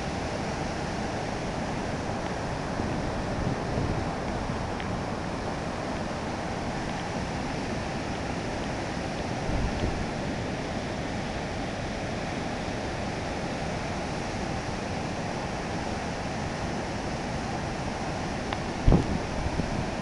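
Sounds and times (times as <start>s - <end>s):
waterfall roaring: 0.0s - 20.0s
wind buffeting microphone: 2.4s - 4.9s, 18.8s - 20.0s.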